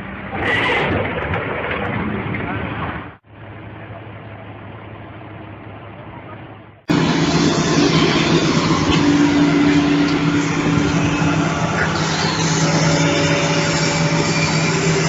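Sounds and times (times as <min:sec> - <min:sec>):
heavy machine engine running: 0:06.9 - 0:15.0.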